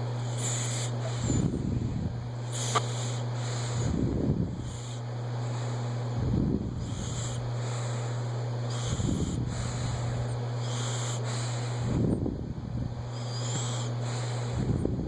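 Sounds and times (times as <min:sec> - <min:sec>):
breathy hiss: 0:00.0 - 0:01.6, 0:02.4 - 0:04.0, 0:06.8 - 0:12.0, 0:13.1 - 0:14.8
steady low hum: 0:00.0 - 0:15.0.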